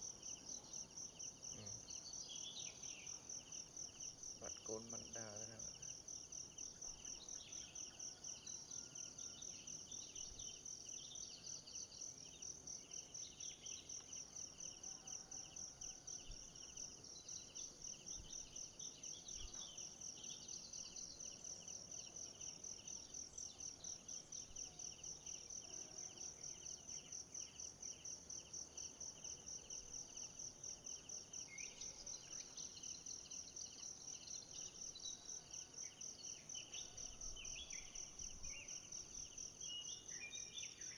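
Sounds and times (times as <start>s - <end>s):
insects chirping rhythmically: 0.0s - 40.9s
faint bird chirps: 4.4s - 5.9s.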